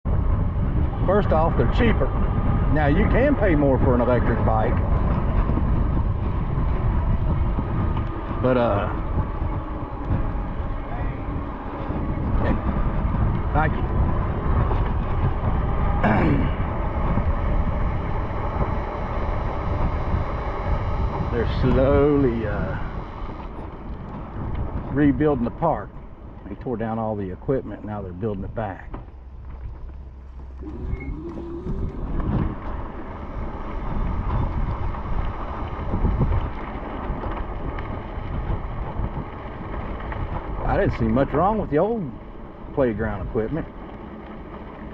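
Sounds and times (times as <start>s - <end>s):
wind buffeting microphone: 0.0s - 44.9s
falling tone: 28.4s - 35.1s.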